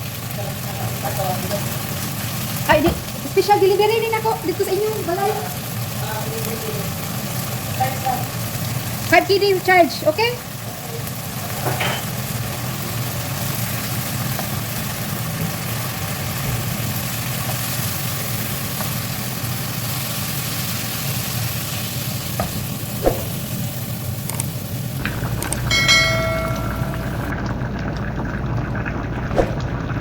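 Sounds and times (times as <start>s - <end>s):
curry sizzling in a pan: 0.0s - 29.1s
low hum: 25.2s - 27.8s.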